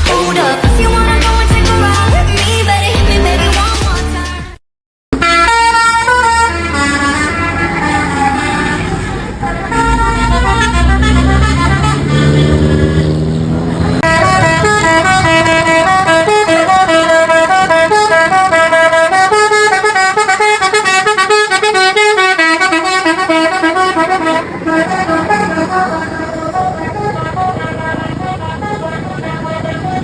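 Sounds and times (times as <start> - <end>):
multi-tone musical air horn: 5.2 - 13.1, 13.9 - 30.0
low sound rising in pitch: 5.2 - 17.9.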